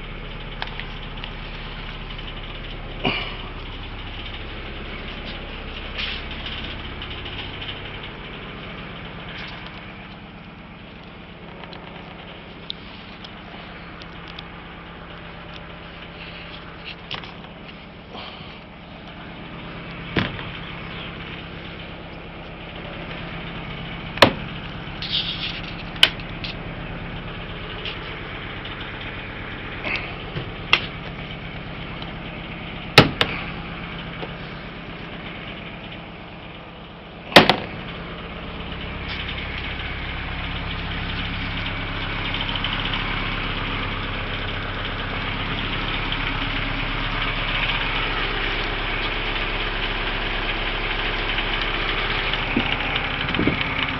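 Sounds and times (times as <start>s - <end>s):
boat engine idling: 0.0s - 53.9s
sharp knocks: 33.0s - 33.4s.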